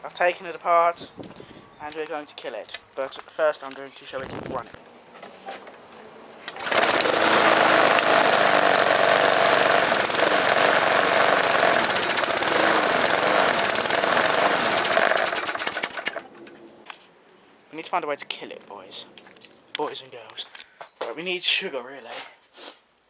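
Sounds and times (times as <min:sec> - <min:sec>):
lawn mower engine running: 0:06.4 - 0:16.5.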